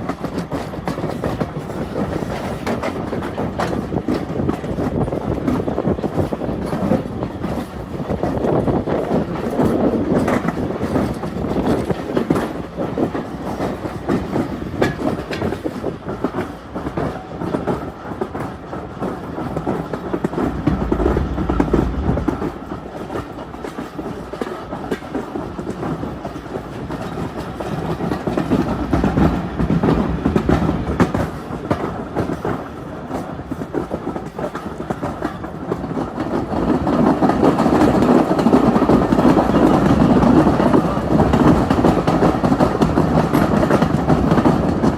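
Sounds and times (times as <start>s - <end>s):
train carriage rumbling: 0.0s - 44.9s
wheels clicking over rail joints: 0.0s - 44.9s.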